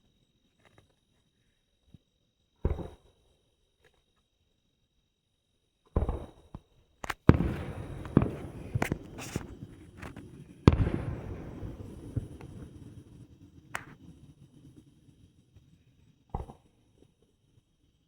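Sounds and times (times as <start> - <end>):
fireworks bangs with rumbling echo: 7.1 - 15.1.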